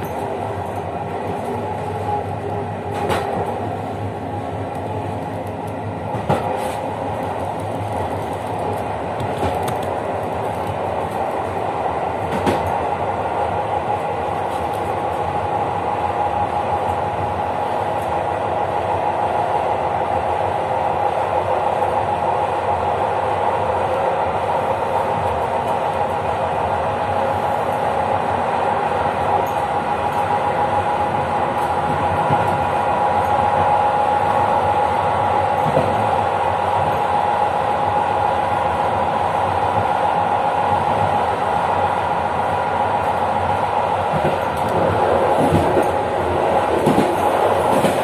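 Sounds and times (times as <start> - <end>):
train clicks and knocks: 0.0 - 15.5, 23.6 - 28.4, 29.0 - 41.4, 42.8 - 48.0
train wheels rumbling on rails: 0.0 - 48.0.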